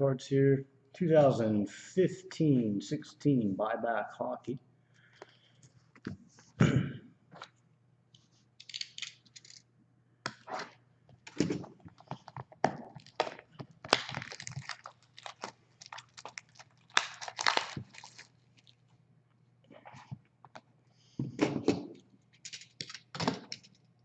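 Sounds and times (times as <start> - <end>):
plastic wrap crinkling: 11.9 - 19.0.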